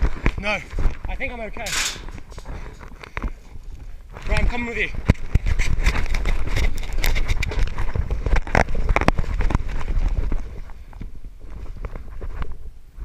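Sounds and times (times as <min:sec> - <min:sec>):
hurried footsteps: 0:00.0 - 0:06.0
gear rattling: 0:01.5 - 0:02.6.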